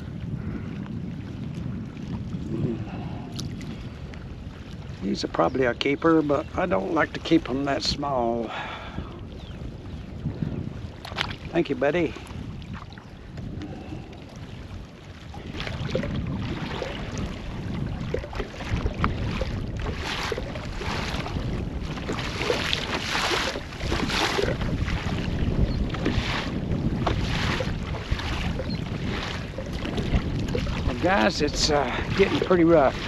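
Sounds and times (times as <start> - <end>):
wind buffeting microphone: 0.0 - 33.0
waves splashing against kayak: 5.9 - 33.0.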